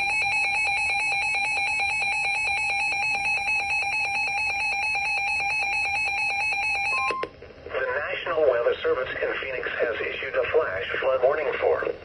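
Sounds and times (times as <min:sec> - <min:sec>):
steady electronic alarm tone: 0:00.0 - 0:07.3.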